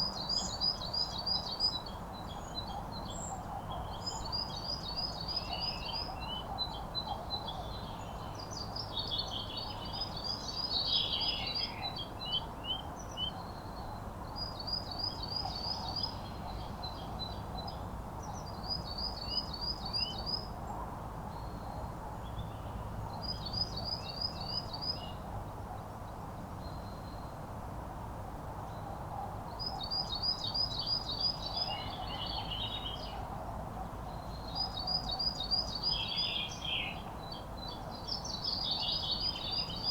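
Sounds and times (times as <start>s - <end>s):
songbird singing: 29.5s - 33.3s, 34.0s - 39.9s.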